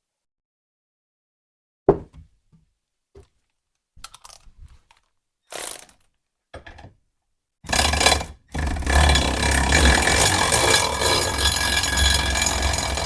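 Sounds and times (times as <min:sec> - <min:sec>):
small metal clicks: 0:04.0 - 0:06.2
ratcheting scraping metal: 0:07.7 - 0:13.0.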